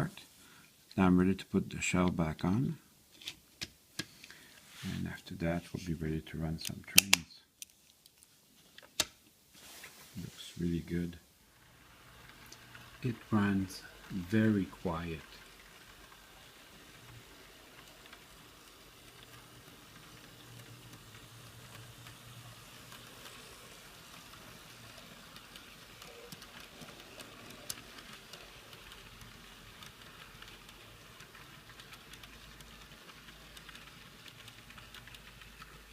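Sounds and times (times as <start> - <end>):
model train wheels clicking: 10.5 - 35.9
model train motor whirring: 10.6 - 35.9.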